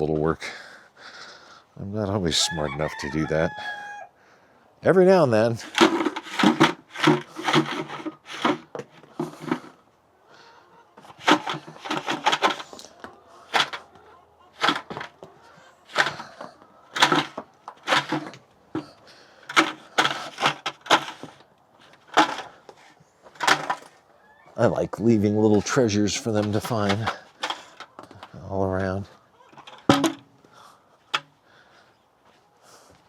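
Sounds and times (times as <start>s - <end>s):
objects knocking and rustling: 5.6s - 9.8s, 11.0s - 24.0s, 26.2s - 28.4s, 29.5s - 30.4s.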